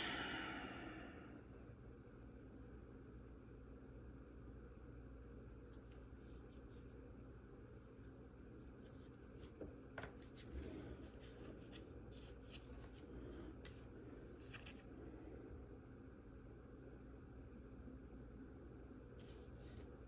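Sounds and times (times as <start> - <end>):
fingers handling sticker sheet: 7.7 - 14.9.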